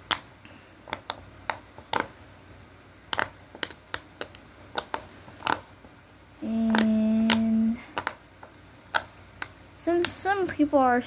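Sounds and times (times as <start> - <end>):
fidget toy popping: 6.7 - 8.2.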